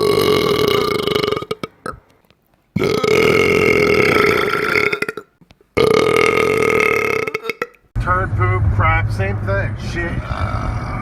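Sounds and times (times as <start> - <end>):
loud belch: 0.0 - 2.0, 2.8 - 7.8, 10.2 - 11.0.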